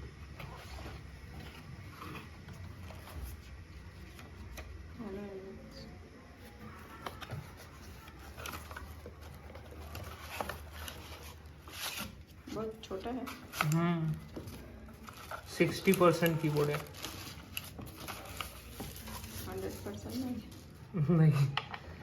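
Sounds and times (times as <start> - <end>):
packaging rustling: 6.6 - 22.0.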